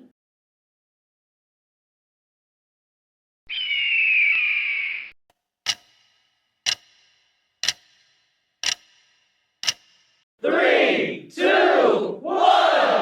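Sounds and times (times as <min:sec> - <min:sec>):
screechy bird call: 0:03.5 - 0:05.2
ticking clock timer: 0:05.6 - 0:10.3.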